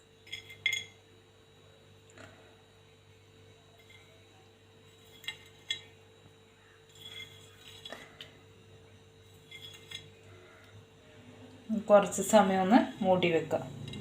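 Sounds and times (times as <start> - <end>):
utensils clinking against plate: 6.9 - 8.2.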